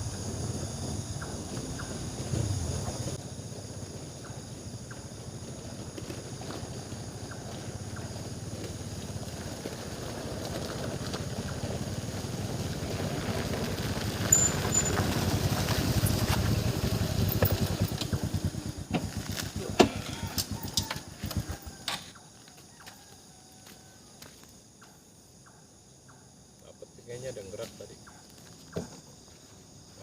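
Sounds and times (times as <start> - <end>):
engine passing with pulsing rumble: 0.0 - 19.8.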